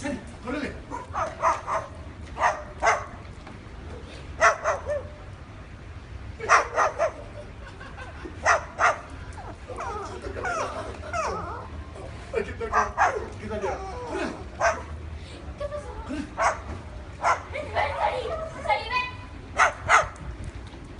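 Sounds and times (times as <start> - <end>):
dog barking: 0.9 - 3.2, 4.4 - 5.2, 6.5 - 7.2, 8.4 - 9.1, 12.7 - 13.8, 14.6 - 14.9, 16.4 - 16.6, 17.2 - 17.5, 19.6 - 20.2
dog yowling: 8.5 - 11.8, 12.8 - 14.9.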